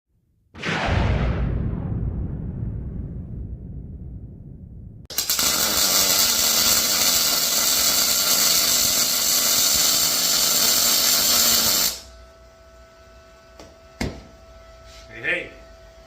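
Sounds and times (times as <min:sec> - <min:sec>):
welding arc hissing and crackling: 0:05.1 - 0:12.1.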